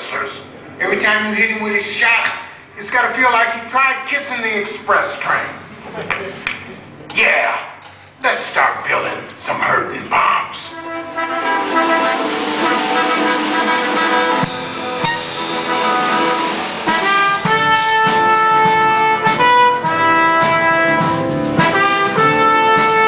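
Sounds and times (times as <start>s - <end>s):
brass music with held notes: 10.7s - 23.0s.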